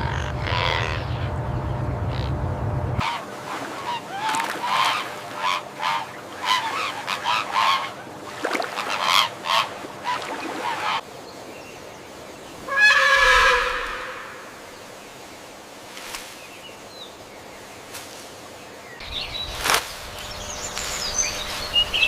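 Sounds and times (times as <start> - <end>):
bird calling: 0.0 - 2.4, 3.0 - 11.0, 12.5 - 15.0, 18.9 - 22.0
low rumble: 0.0 - 3.0.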